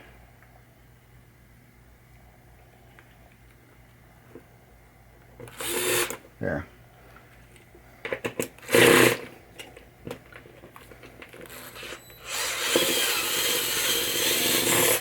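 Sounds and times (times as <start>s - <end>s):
power screwdriver whirring: 5.5s - 6.2s, 11.4s - 15.0s.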